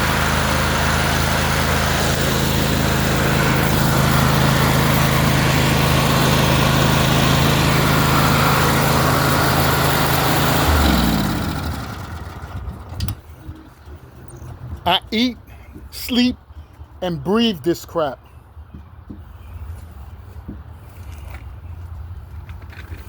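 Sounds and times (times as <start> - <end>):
engine coasting to a stop: 0.0 - 14.8, 18.7 - 23.0
mower engine running: 0.0 - 16.3.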